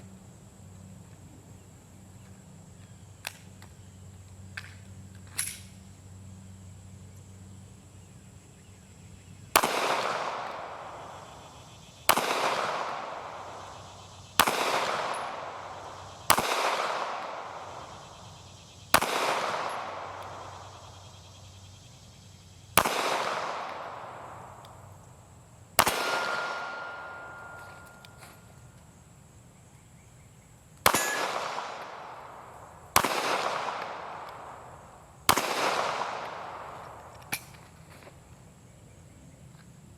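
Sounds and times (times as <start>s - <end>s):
pistol shots ringing on steel: 9.5s - 11.4s, 12.1s - 18.2s, 18.9s - 20.9s, 22.8s - 24.4s, 25.8s - 28.4s, 30.8s - 32.4s, 33.0s - 34.6s.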